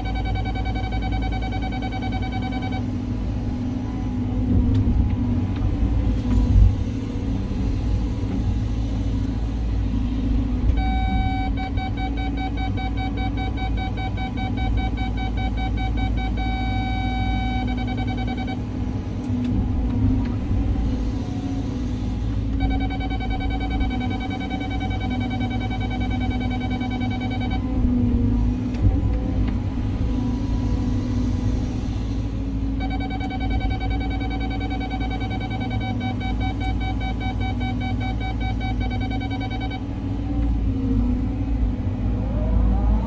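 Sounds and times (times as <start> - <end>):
rapidly pulsing electronic beep: 0.0 - 3.0, 10.8 - 18.7, 22.6 - 27.6, 32.8 - 39.9
excavator diesel engine rumbling: 0.0 - 43.0.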